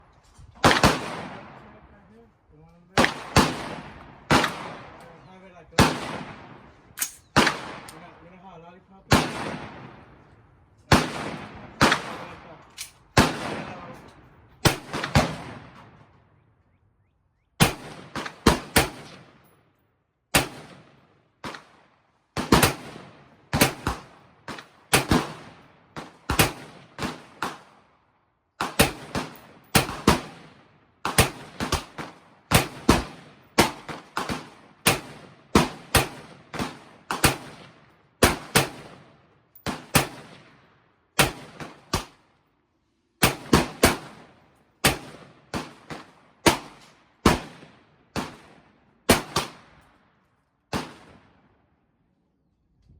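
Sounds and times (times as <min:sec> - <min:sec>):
rifle shots echoing: 0:00.6 - 0:02.0, 0:02.9 - 0:16.2, 0:17.6 - 0:19.4, 0:20.3 - 0:27.9, 0:28.6 - 0:42.2, 0:43.2 - 0:49.8, 0:50.7 - 0:51.4.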